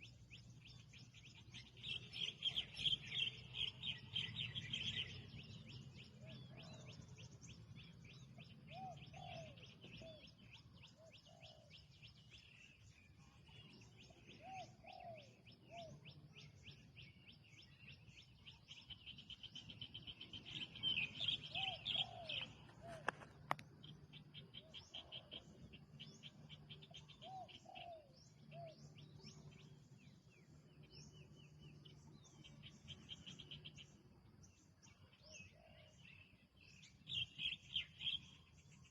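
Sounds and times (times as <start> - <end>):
high chirping of small birds: 0.0 - 38.9
dove cooing: 6.2 - 7.0, 8.7 - 11.8, 14.0 - 16.1, 20.5 - 23.5, 26.7 - 28.9, 35.3 - 36.0.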